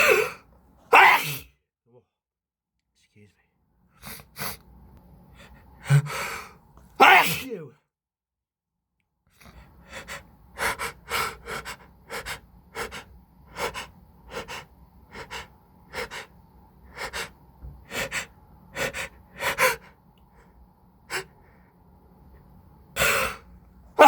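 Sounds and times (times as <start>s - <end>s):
person gasping inhalations: 0.0s - 0.4s, 5.8s - 6.6s.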